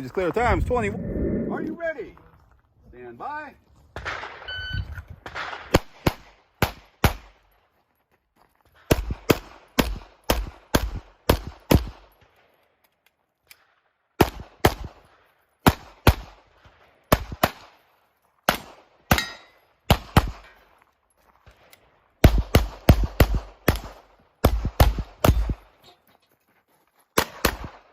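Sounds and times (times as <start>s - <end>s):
pistol shots: 18.5s - 20.5s, 22.2s - 25.6s, 27.2s - 27.9s.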